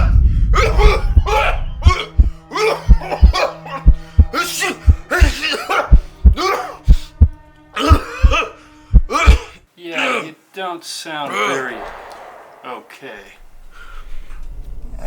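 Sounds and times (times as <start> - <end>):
background music with steady beat: 0.0 - 9.6
man coughing: 0.6 - 3.5, 5.1 - 6.9, 7.8 - 9.6.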